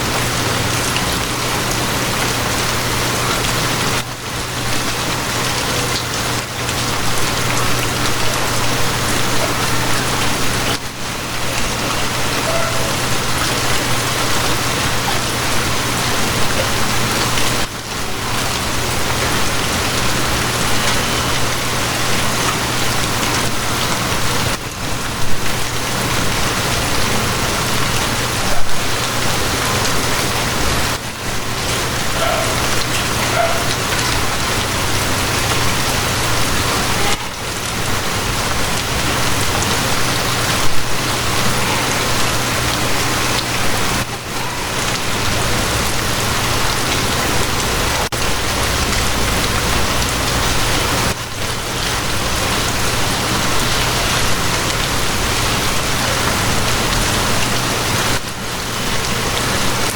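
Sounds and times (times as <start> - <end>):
steady rain: 0.0 - 59.9
train humming: 47.2 - 51.2.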